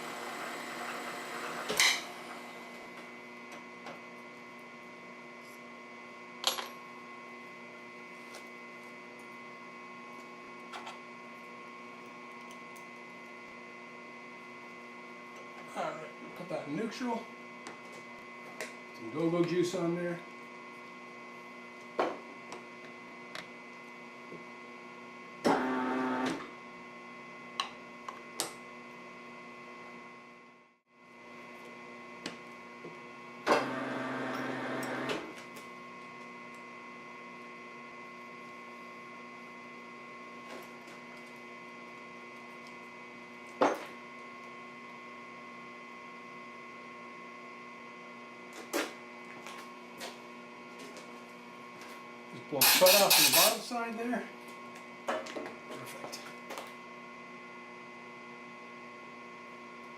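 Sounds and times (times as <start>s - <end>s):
shop machinery hum: 0.0s - 9.3s, 25.4s - 26.9s, 32.1s - 35.6s, 52.3s - 54.3s
mechanical whir: 52.6s - 53.6s.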